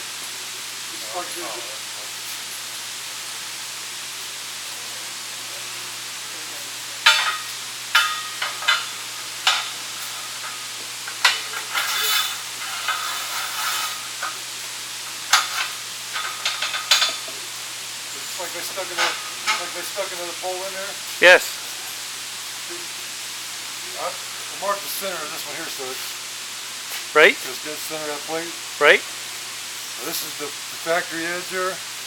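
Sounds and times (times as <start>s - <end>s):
electric arc welding crackle: 6.1s - 22.6s.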